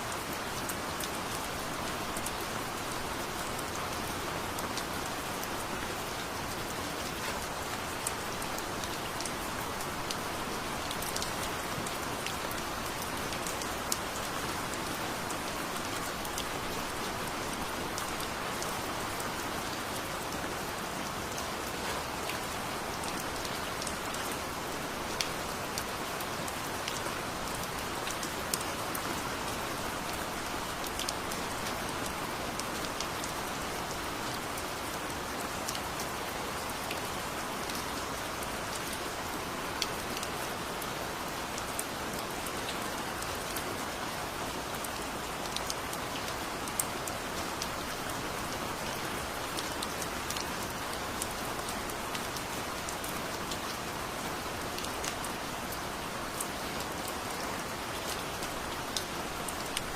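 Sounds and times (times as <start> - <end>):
raindrops ticking close by: 0.1 - 59.9.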